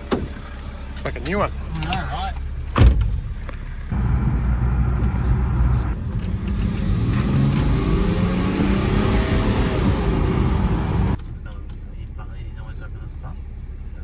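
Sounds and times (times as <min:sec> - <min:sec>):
car engine accelerating: 0:03.4 - 0:11.2.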